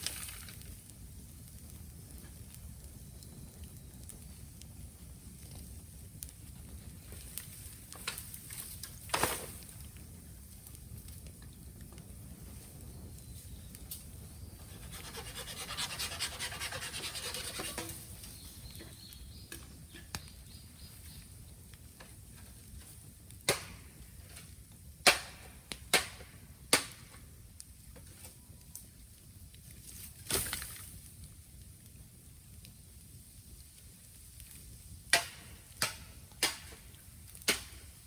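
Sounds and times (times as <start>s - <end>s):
bamboo fire crackling hiss: 0.0s - 38.0s
bamboo sharp pops: 23.4s - 23.9s, 25.0s - 27.2s, 35.1s - 37.9s.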